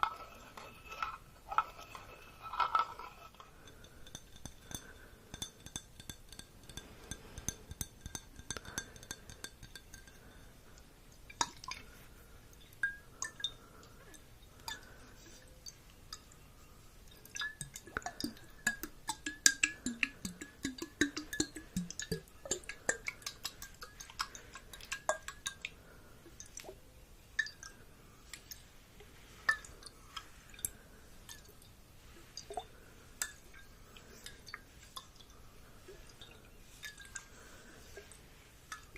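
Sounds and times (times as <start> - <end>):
glass clinking and tapping: 0.0 - 10.6, 12.8 - 15.0, 17.1 - 25.7, 33.2 - 35.1.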